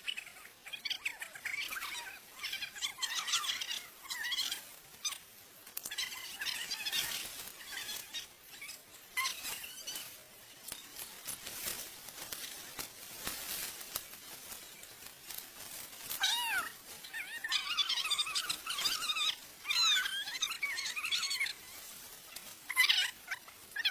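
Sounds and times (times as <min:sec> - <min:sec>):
animal wavering cry: 0:00.0 - 0:05.2, 0:16.2 - 0:22.0, 0:22.7 - 0:23.9
light clicks and rustles: 0:04.5 - 0:17.3.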